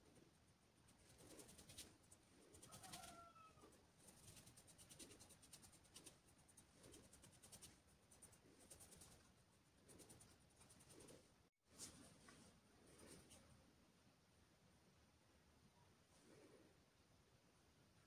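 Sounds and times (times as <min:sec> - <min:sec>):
paintbrush strokes on canvas: 0:00.0 - 0:13.5.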